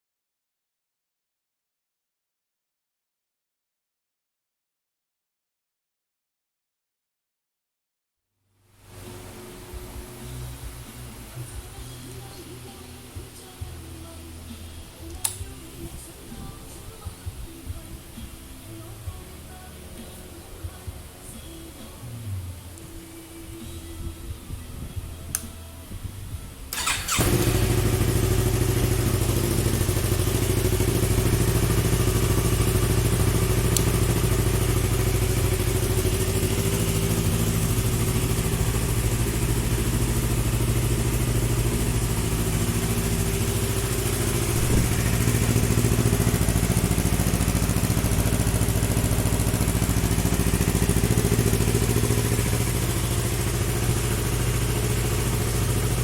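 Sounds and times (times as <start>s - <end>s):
motorcycle engine starting and idling: 8.9s - 18.2s, 26.7s - 56.0s.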